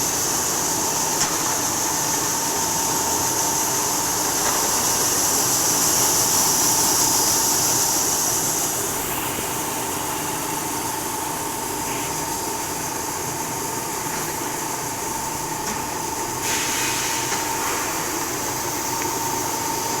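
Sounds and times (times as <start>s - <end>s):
washing machine motor hum: 0.0s - 20.0s
high hiss: 16.2s - 20.0s.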